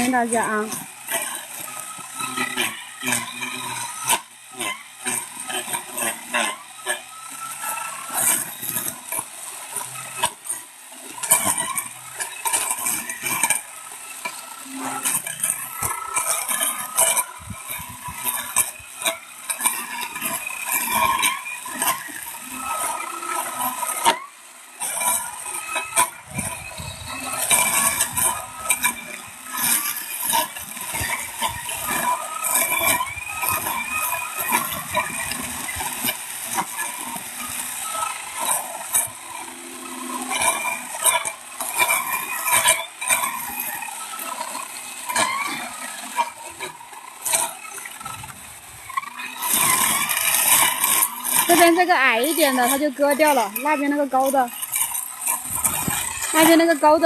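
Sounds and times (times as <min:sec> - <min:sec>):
sickle cutting grass: 0:00.0 - 0:57.0.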